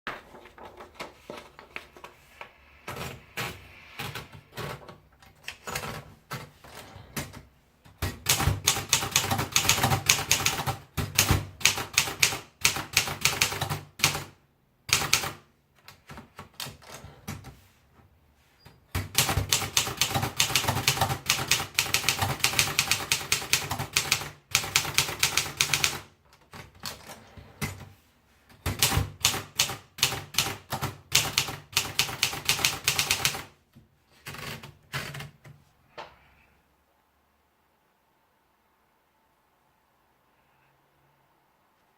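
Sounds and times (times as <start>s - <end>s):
typewriter keystrokes: 8.0s - 14.3s, 14.9s - 17.5s, 18.9s - 27.2s, 28.6s - 33.5s.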